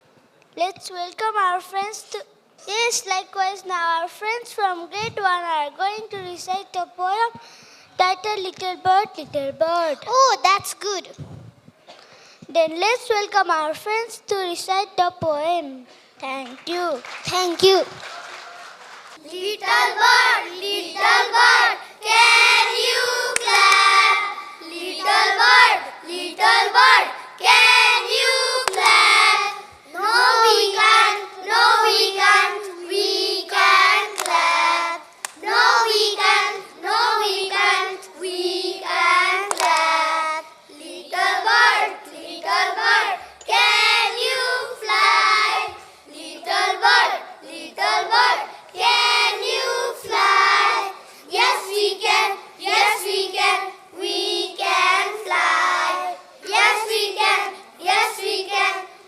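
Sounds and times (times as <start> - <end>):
children chanting in sing-song: 19.2 - 59.0.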